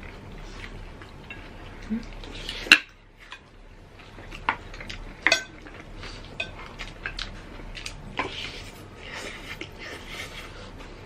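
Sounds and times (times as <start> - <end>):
cutlery clinking on plates: 5.2 - 5.7.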